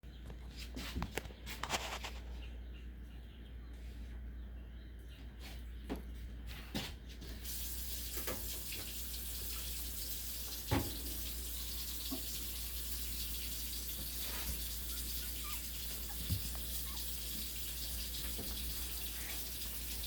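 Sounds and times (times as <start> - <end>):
water running from a tap: 7.4 - 20.0.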